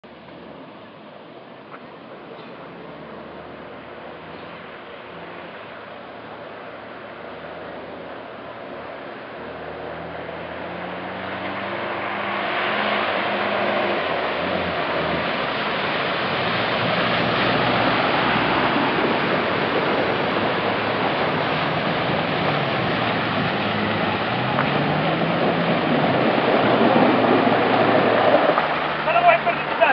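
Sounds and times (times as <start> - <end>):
water rushing: 0.0 - 29.9.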